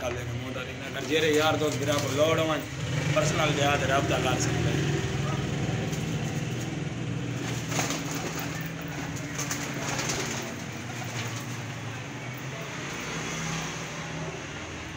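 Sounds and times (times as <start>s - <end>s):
pigeons cooing: 0.9s - 12.2s.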